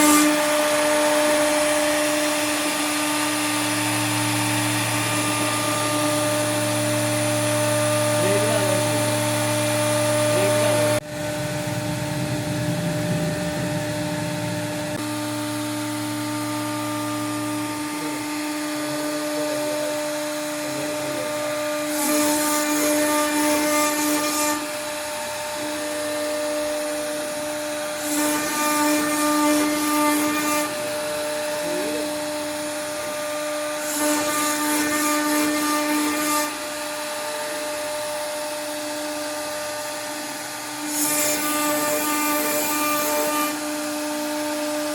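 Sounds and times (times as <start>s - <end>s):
bit cutting into wood: 0.0s - 11.8s, 12.6s - 44.9s
router spindle whine: 0.0s - 44.9s.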